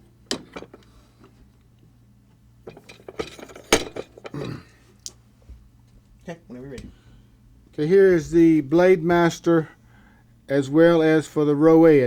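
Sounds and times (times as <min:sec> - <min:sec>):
metal tool parts clinking: 0:02.7 - 0:04.5.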